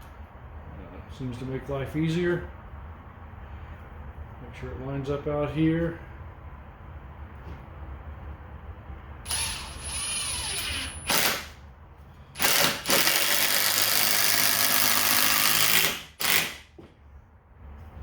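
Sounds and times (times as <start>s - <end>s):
hammer drill driving screw: 9.3s - 11.5s, 12.4s - 16.7s.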